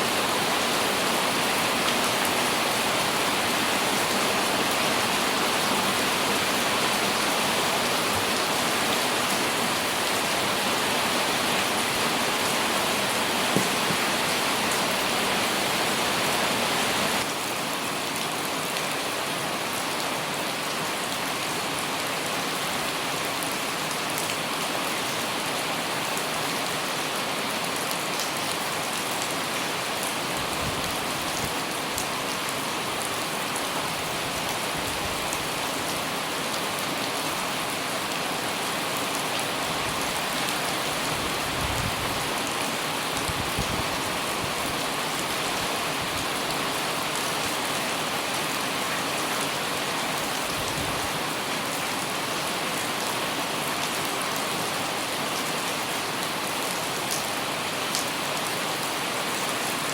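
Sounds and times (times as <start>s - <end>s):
light rain on an umbrella: 0.0s - 21.4s.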